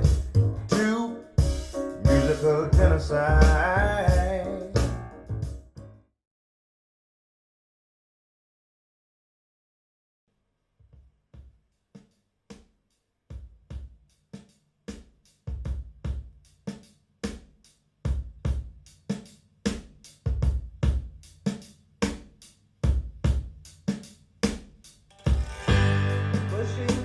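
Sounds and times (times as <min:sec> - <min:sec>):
drum kit beat: 0:00.0 - 0:05.7, 0:13.3 - 0:27.0.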